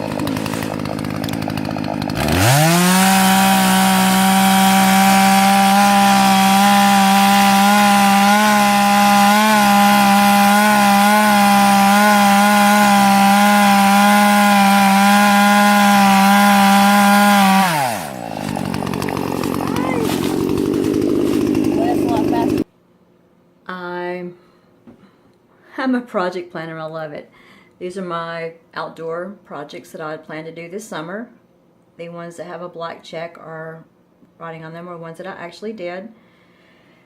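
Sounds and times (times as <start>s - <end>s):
chainsaw cutting log: 0.0s - 22.7s.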